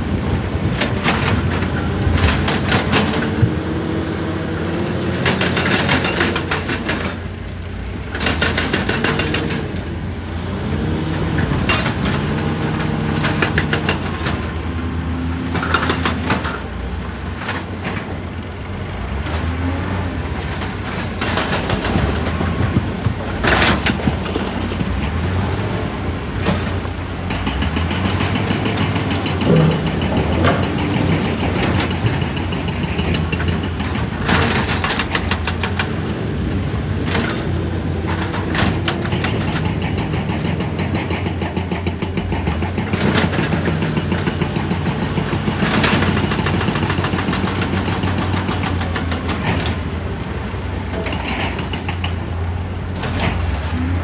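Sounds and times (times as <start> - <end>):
excavator diesel engine running: 0.0 - 54.0
rapid hammering against rock: 27.2 - 36.0, 37.0 - 49.7.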